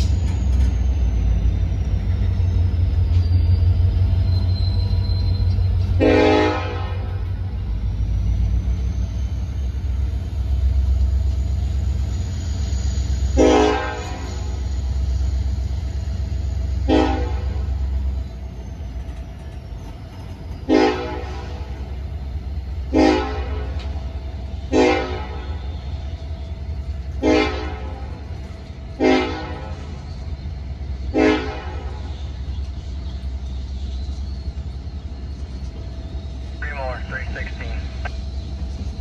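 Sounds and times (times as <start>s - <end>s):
locomotive engine rumble: 0.0s - 39.0s
locomotive horn blasts: 5.9s - 7.2s, 13.4s - 14.4s, 16.8s - 17.7s, 20.7s - 21.7s, 22.9s - 23.8s, 24.7s - 25.6s, 27.2s - 28.0s, 29.0s - 29.7s, 31.1s - 32.0s.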